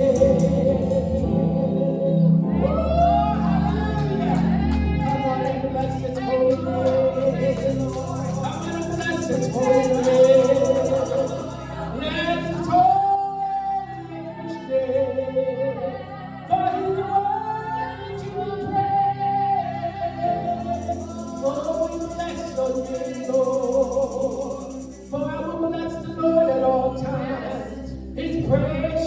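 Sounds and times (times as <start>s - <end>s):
woman singing gospel: 0.0s - 29.0s
instrumental accompaniment: 7.0s - 12.7s.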